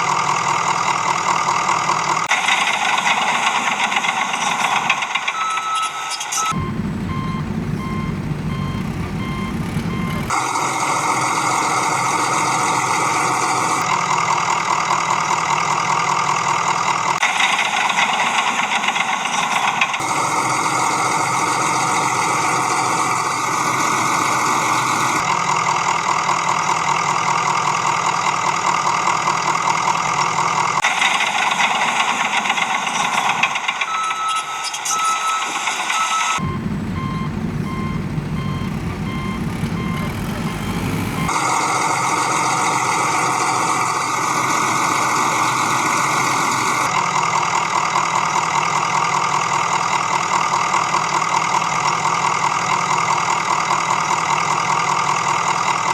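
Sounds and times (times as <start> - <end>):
heavy vehicle engine running: 0.0 - 55.9
reversing beeper: 2.4 - 13.9, 17.5 - 25.2, 30.9 - 47.0
deep engine rumble: 6.6 - 14.2, 36.4 - 46.9.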